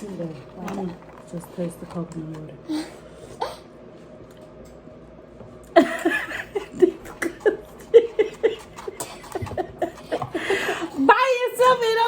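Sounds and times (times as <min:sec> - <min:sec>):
person laughing: 0:05.7 - 0:10.9.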